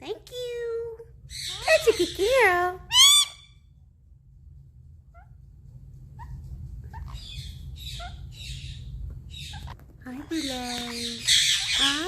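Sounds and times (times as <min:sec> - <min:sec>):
parrots chirping and squawking: 0:01.2 - 0:03.7, 0:06.1 - 0:12.0.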